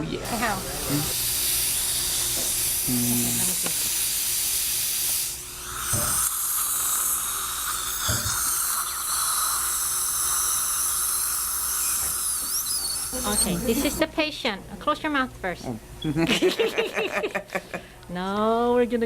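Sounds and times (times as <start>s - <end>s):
dental equipment hissing: 0.2s - 14.1s.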